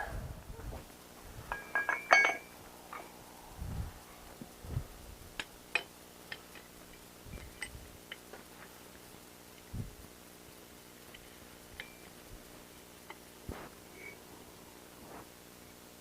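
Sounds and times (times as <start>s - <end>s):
metal clang on anvil: 1.5s - 2.5s
light metallic clinks: 1.5s - 3.2s.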